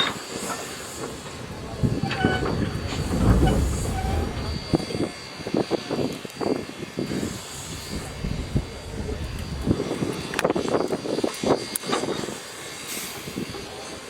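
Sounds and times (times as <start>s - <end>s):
train rumbling: 0.0s - 5.3s, 7.1s - 11.3s
knocks and clanks: 1.0s - 4.7s.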